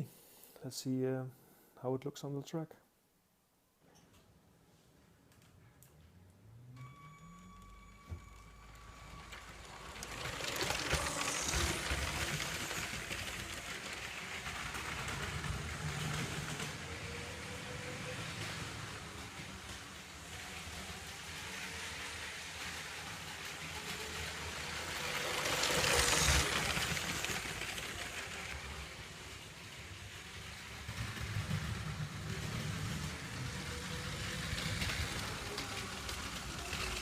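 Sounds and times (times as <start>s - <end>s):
wheel rumble on plastic track: 8.4s - 37.0s
toy train motor hum: 8.8s - 37.0s.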